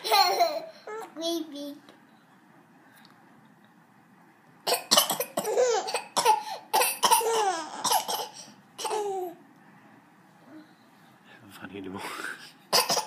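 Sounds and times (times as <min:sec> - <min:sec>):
baby laughing: 0:00.0 - 0:01.1, 0:05.4 - 0:09.4
person coughing: 0:12.8 - 0:13.0.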